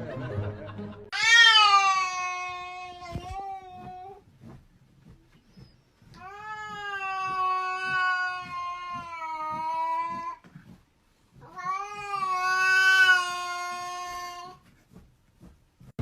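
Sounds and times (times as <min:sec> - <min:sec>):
cat yowling: 0:01.2 - 0:04.2, 0:06.2 - 0:10.4, 0:11.4 - 0:14.6.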